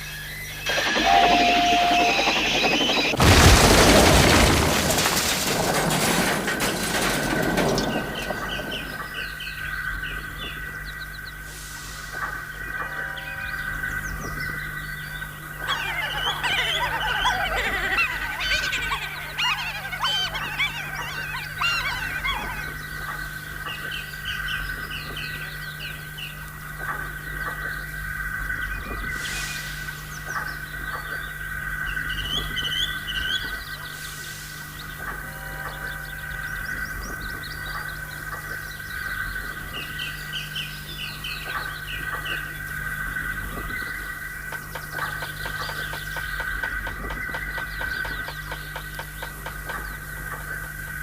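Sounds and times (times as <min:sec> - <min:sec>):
birds squawking and chirping: 0:00.0 - 0:04.4, 0:06.6 - 0:51.0
steady high tone: 0:00.6 - 0:03.2
chickens clucking: 0:00.6 - 0:03.3, 0:15.5 - 0:25.4.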